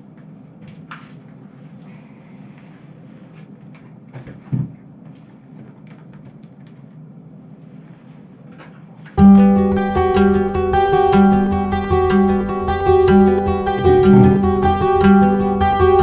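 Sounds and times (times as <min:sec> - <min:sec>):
acoustic guitar music: 0:09.2 - 0:16.0.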